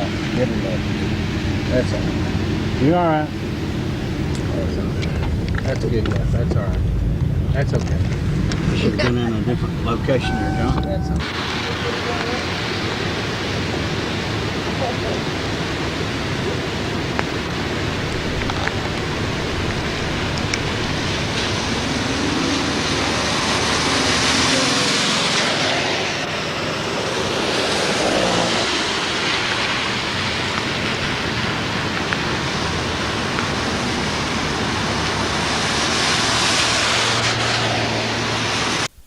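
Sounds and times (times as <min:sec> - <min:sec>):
loud rushing noise: 0:00.0 - 0:39.0.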